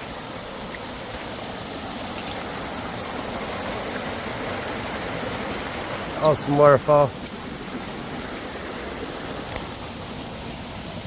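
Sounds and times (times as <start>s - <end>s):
water rushing over waterfall: 0.0s - 11.0s.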